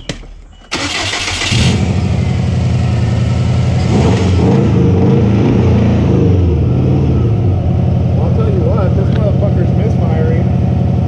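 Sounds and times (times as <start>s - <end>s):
car engine cranking: 0.5s - 5.7s
car engine idling rough: 0.7s - 3.9s, 6.4s - 11.0s.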